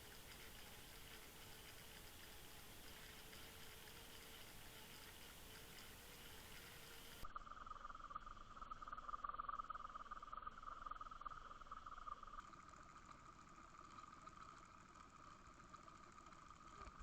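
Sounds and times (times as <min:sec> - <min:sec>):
faint hiss: 0:00.0 - 0:07.3.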